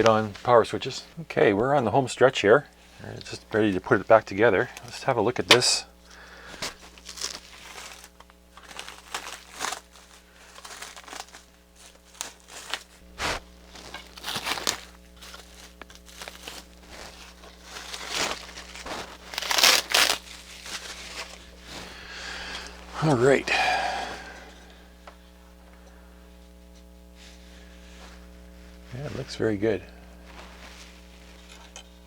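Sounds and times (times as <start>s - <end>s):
steady low hum: 0.0s - 32.0s
packaging crinkling and rustling: 3.0s - 23.2s.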